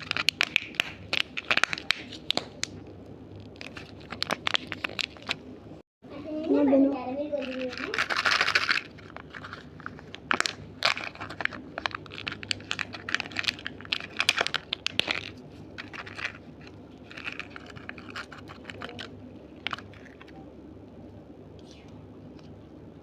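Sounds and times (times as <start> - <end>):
candy crunching and crackling: 0.0 - 5.5, 7.4 - 20.4
soft crinkling: 0.0 - 5.5, 7.3 - 20.5.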